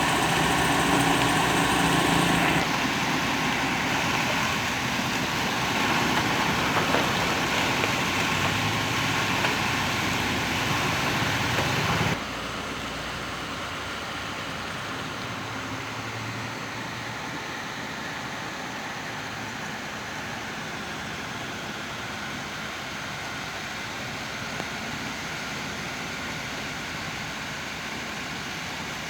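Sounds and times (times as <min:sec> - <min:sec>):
heavy machinery diesel engine running: 0:00.0 - 0:12.2.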